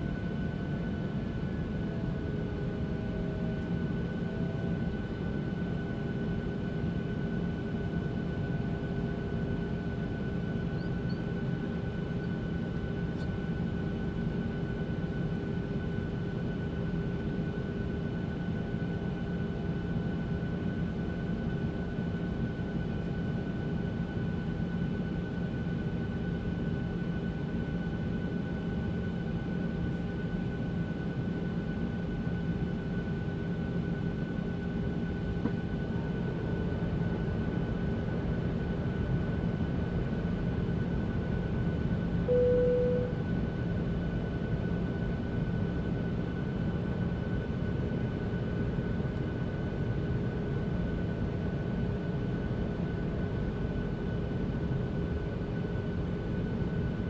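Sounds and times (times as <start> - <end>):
airliner cabin engine rumble: 0.0 - 57.0
constant tonal hum: 41.6 - 44.5.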